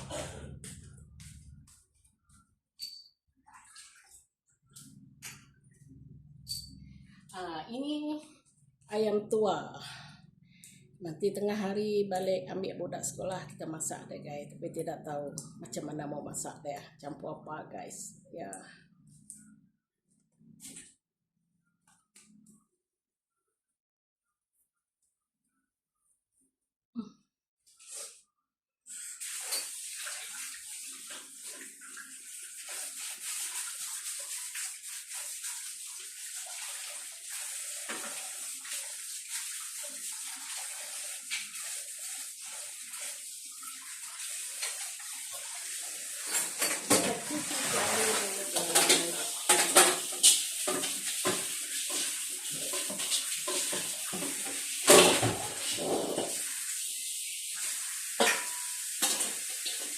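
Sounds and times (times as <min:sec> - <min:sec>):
tap water running into sink: 0:28.9 - 0:59.9
pots and dishes clattering: 0:46.2 - 0:56.4, 0:58.2 - 0:59.9.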